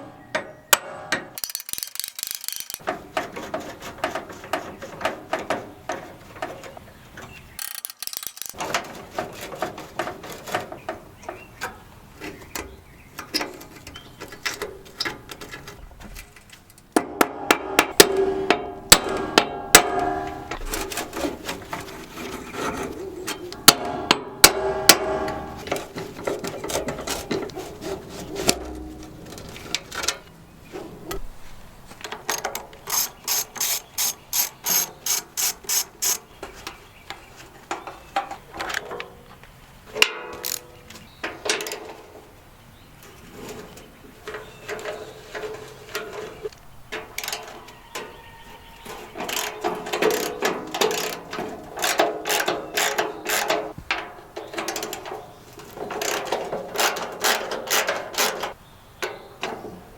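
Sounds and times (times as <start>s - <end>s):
ratchet wrench clicking: 1.4s - 2.9s, 7.6s - 8.6s, 32.3s - 36.2s, 49.3s - 51.2s
sharp metal knock: 17.0s - 20.9s, 23.6s - 25.9s.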